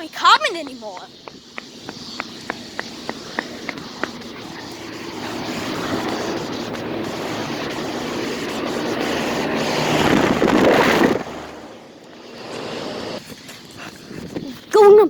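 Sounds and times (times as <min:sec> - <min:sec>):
air-conditioner fan rushing: 0:01.3 - 0:13.2.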